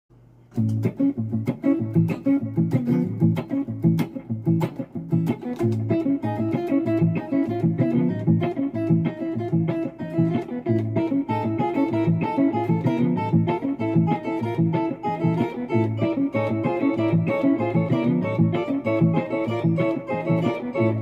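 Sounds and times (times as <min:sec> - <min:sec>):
guitar plucked pattern: 0:00.5 - 0:21.0.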